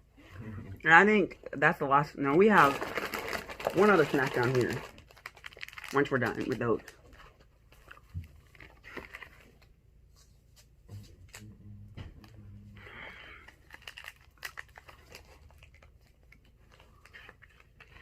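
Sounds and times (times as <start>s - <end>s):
plastic wrappers crinkling: 1.4s - 9.7s, 13.4s - 18.0s
wrapper tearing: 2.3s - 9.6s, 13.4s - 18.0s.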